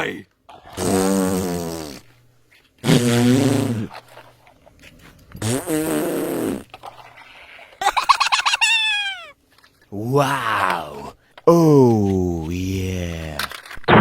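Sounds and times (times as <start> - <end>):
raspy buzzing comedy sound effects: 2.8 - 4.0, 7.8 - 9.4.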